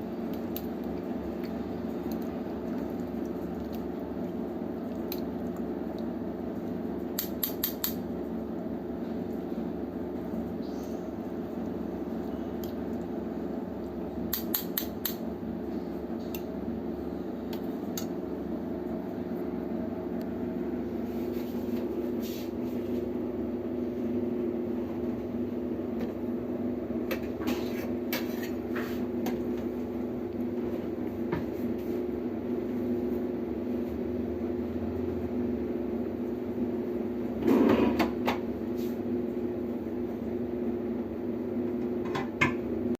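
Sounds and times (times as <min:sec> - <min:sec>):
steady low hum: 0:00.0 - 0:42.9.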